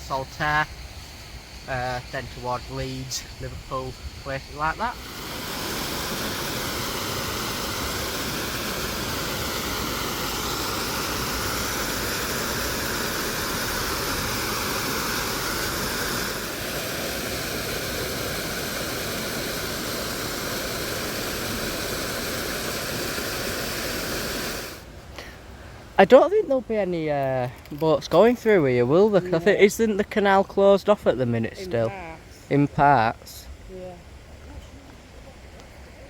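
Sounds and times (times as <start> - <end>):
water rushing and cascading: 0.0 - 27.2.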